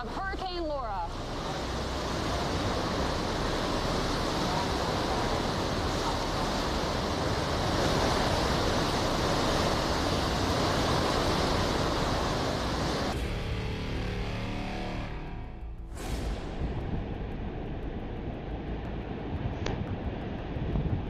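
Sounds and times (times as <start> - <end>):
hurricane winds blowing: 0.0 - 13.2, 16.0 - 21.0.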